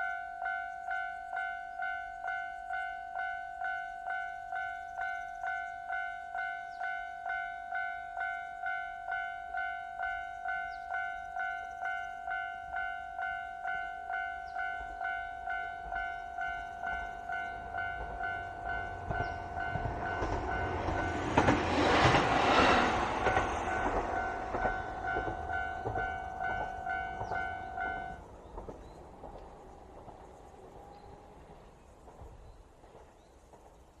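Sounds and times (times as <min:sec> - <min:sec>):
diesel railcar rumbling past: 0:00.0 - 0:34.0
level crossing bell ringing: 0:23.6 - 0:28.2.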